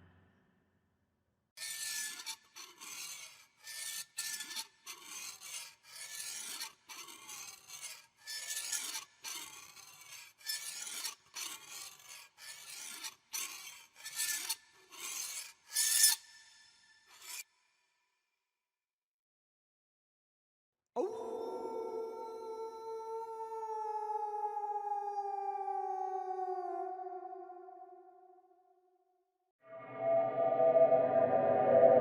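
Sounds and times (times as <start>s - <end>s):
rasping scraping strokes: 1.6s - 17.5s.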